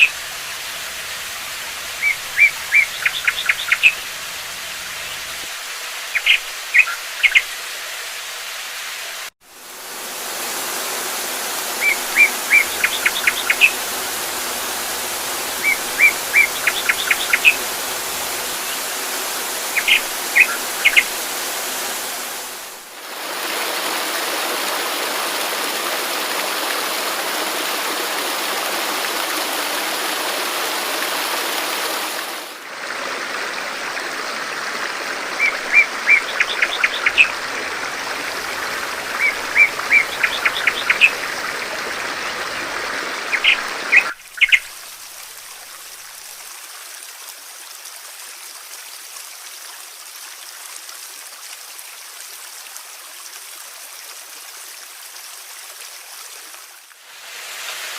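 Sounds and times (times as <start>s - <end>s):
rushing water: 0.0s - 57.9s
small birds chirping: 1.9s - 4.1s, 6.2s - 7.6s, 11.5s - 22.8s, 35.4s - 44.7s.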